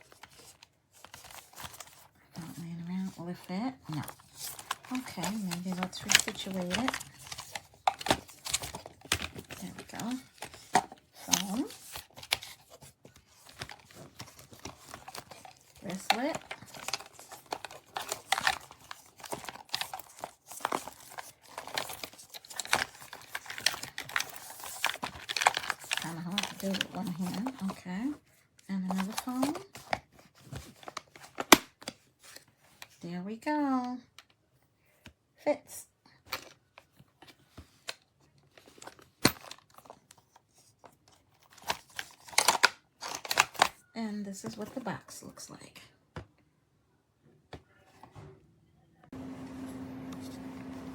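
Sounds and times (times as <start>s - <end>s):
rustling and crinkling: 0.0s - 33.0s, 36.2s - 45.4s, 49.1s - 50.9s.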